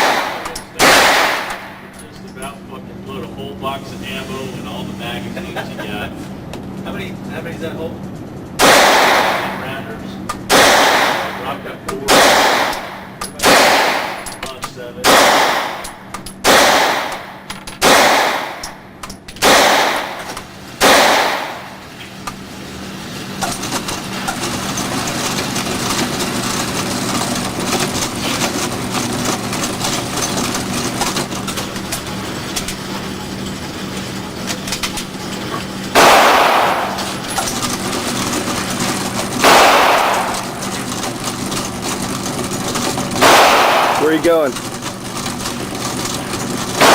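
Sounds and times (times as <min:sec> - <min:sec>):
gunshots with ringing: 0:00.0 - 0:01.9, 0:08.6 - 0:09.8, 0:10.5 - 0:14.4, 0:15.0 - 0:18.8, 0:19.4 - 0:21.9, 0:35.9 - 0:37.4, 0:39.4 - 0:40.8, 0:43.2 - 0:44.5
steady background noise: 0:00.0 - 0:46.9.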